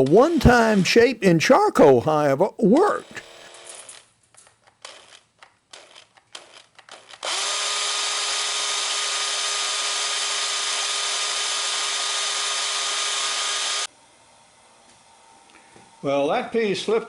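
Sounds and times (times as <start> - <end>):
electric drill drilling into metal: 3.2 - 4.1, 6.9 - 13.9.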